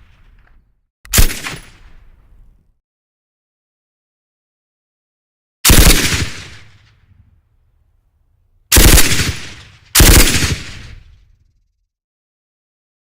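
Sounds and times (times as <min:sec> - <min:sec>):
machine-gun fire bursts: 0:01.1 - 0:01.8, 0:05.7 - 0:06.8, 0:08.7 - 0:11.1.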